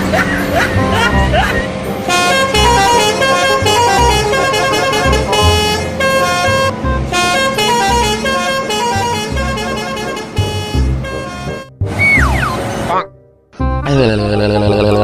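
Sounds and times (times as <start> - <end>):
bus horn melody: 2.0 - 12.6.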